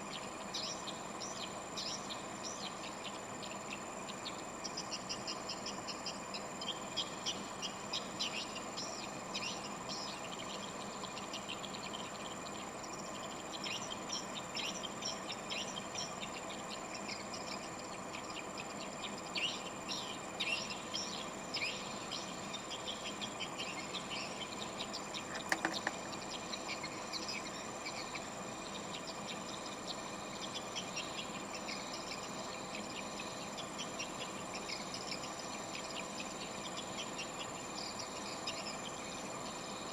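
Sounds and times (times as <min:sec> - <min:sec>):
sharp clicks: 0:25.3 - 0:26.1.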